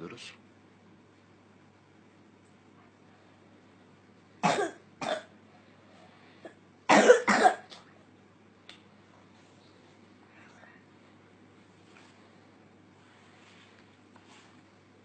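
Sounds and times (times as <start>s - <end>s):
child coughing: 4.4s - 5.3s, 6.9s - 7.9s.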